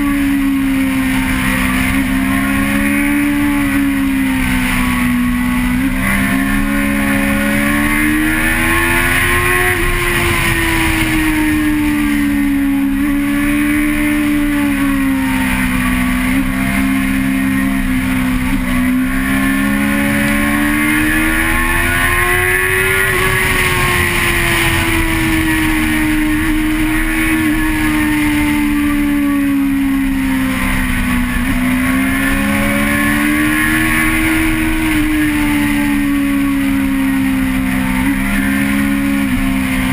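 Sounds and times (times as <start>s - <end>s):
constant rushing noise: 0.0s - 39.9s
vehicle engine running: 0.0s - 39.9s.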